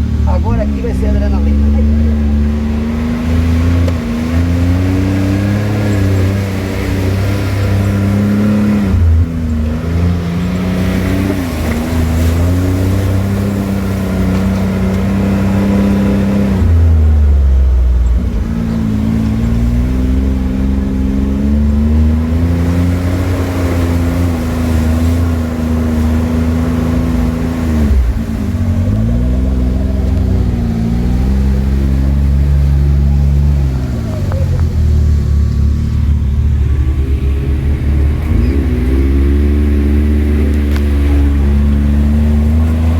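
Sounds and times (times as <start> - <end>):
engine revving up and down: 0.0 - 42.9.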